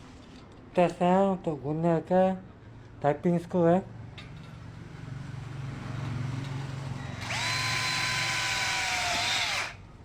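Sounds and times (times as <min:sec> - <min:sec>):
cordless drill motor whining: 0:07.2 - 0:09.8.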